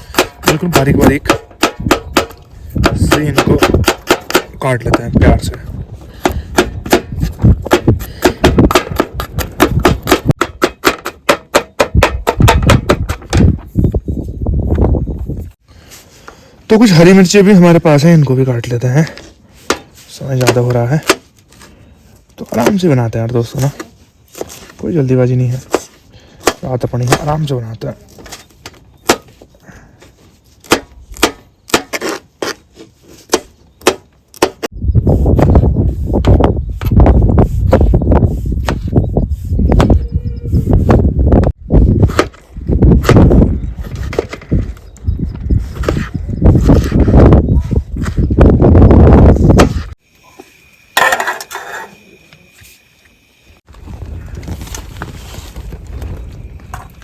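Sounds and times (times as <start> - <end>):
knife chopping garlic: 0.0 - 5.1
wind rumble on microphone: 0.0 - 10.6, 11.8 - 15.6, 34.7 - 50.0, 53.7 - 57.0.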